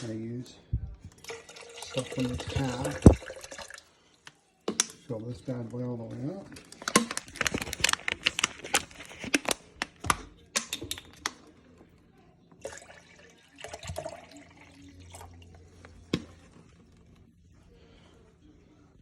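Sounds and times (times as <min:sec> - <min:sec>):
water pouring from a bottle: 0:00.8 - 0:03.9.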